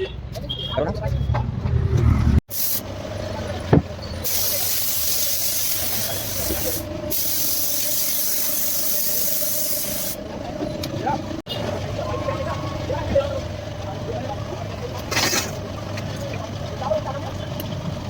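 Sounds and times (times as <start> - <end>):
spray paint hissing: 2.5 - 2.9, 4.2 - 10.2.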